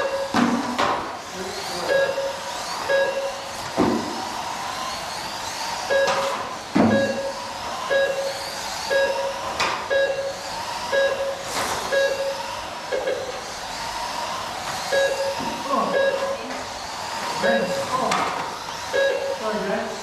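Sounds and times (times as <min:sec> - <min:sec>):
small electric motors whining: 0:00.0 - 0:20.0
short electronic beep: 0:06.9 - 0:08.3, 0:08.9 - 0:10.3, 0:11.0 - 0:13.3, 0:15.0 - 0:16.4, 0:19.0 - 0:19.4.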